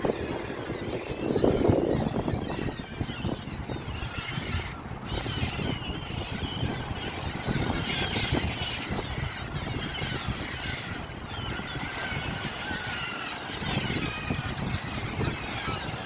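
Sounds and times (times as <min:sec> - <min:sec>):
sea waves washing: 0:00.0 - 0:02.2
birds chirping and calling: 0:00.0 - 0:16.0.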